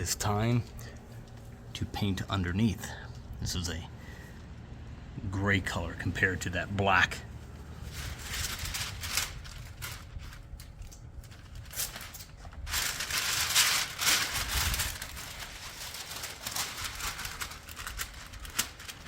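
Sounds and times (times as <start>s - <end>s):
masking paper crinkling and rustling: 5.5s - 19.0s.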